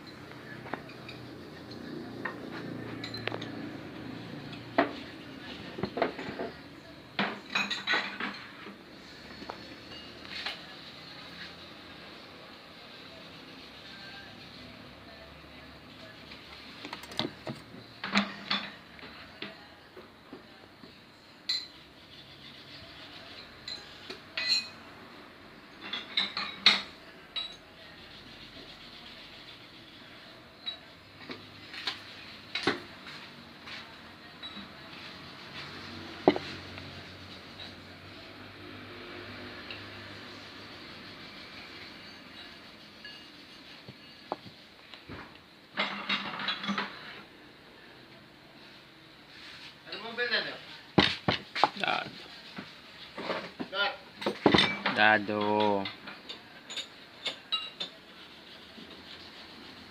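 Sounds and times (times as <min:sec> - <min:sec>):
metal tools clinking and knocking: 0:00.0 - 0:03.7, 0:07.2 - 0:08.7, 0:16.9 - 0:19.6, 0:23.6 - 0:24.8, 0:25.8 - 0:27.7, 0:45.8 - 0:47.2, 0:54.2 - 0:58.0.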